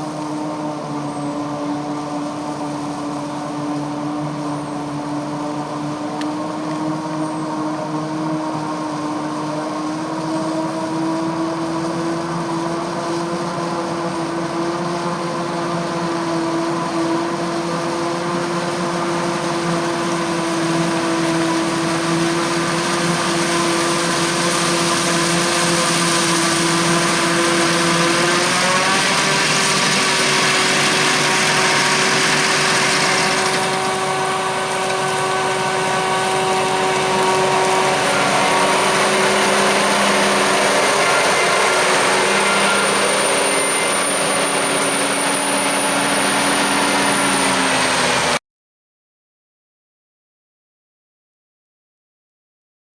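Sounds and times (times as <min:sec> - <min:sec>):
diesel engine running: 0:00.0 - 0:48.4
thin high whine: 0:22.4 - 0:48.4.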